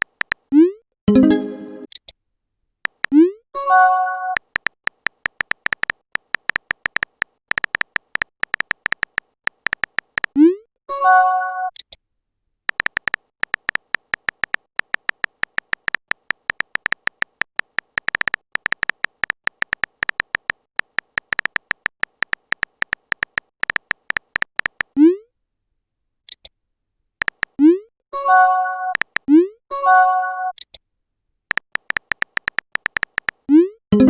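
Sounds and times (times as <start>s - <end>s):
phone keyboard typing ticks: 0.0s - 0.5s, 2.8s - 3.3s, 4.3s - 10.4s, 12.7s - 25.0s, 27.2s - 27.6s, 28.9s - 29.3s, 31.5s - 33.7s.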